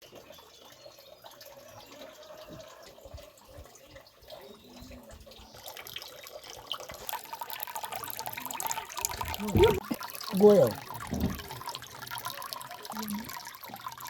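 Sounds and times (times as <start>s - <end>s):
rain falling and dripping: 0.0s - 14.0s.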